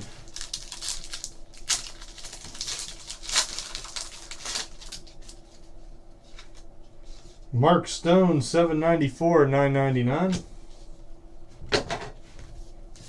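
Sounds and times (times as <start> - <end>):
cards and packaging rustling: 0.2 - 5.7.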